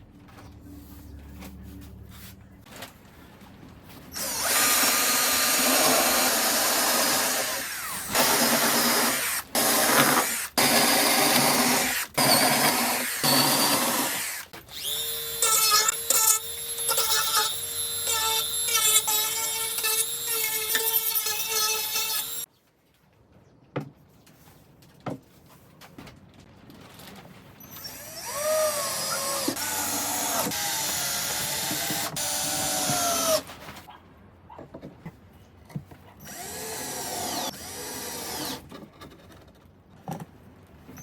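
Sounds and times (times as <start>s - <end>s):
drill motor whining: 4.2s - 22.4s, 27.8s - 33.4s, 36.3s - 38.6s
harsh noisy power tool running: 4.2s - 22.4s.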